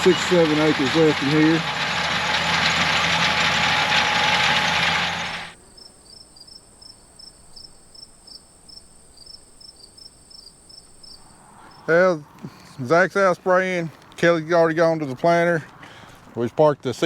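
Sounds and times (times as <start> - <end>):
farm machine engine running: 0.0 - 5.6
steady high buzz: 0.0 - 12.2
insects chirping: 5.6 - 12.9.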